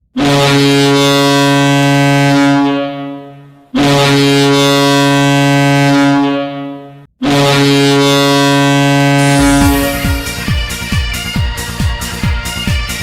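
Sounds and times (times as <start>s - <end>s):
deep goal horn blasts: 9.0s - 10.8s.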